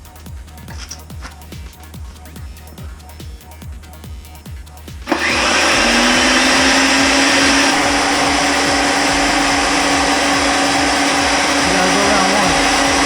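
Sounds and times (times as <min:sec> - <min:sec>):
power tool motor running: 0:05.0 - 0:13.0.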